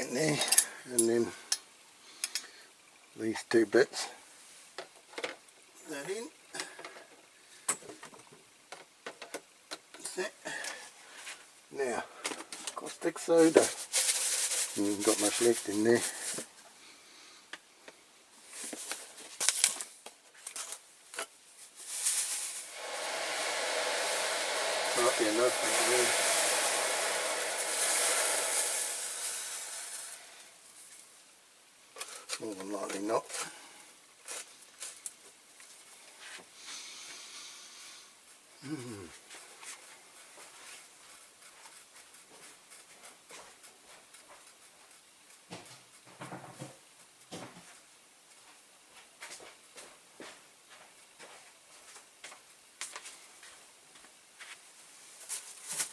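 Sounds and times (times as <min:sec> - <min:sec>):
granules pouring hiss: 0:13.1 - 0:16.6, 0:21.7 - 0:31.4
granules rattling in a container: 0:24.0 - 0:30.5.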